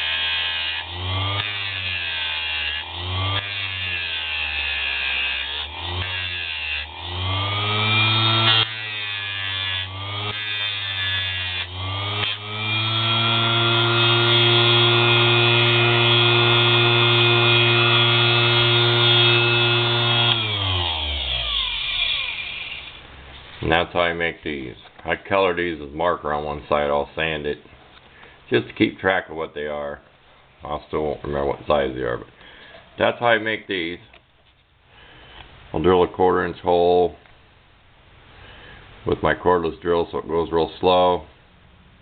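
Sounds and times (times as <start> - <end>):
grinder cutting plexiglass: 0.0 - 23.0.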